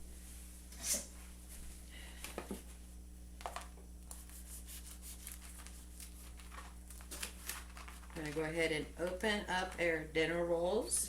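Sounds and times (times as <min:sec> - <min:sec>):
steady low hum: 0:00.0 - 0:11.0
plastic packaging crinkling: 0:04.7 - 0:09.8.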